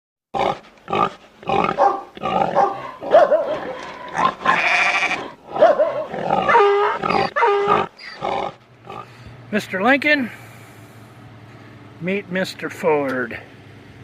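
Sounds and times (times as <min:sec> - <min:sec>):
harsh animal call: 0:00.4 - 0:09.2
short animal calls: 0:06.4 - 0:09.2.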